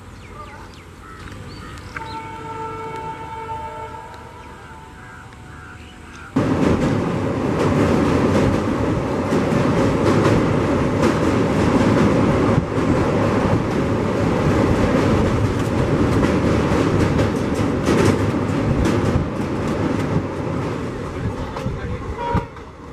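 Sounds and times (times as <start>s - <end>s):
train rumble: 0.0s - 22.9s
train wheels clacking over rail joints: 6.1s - 22.9s.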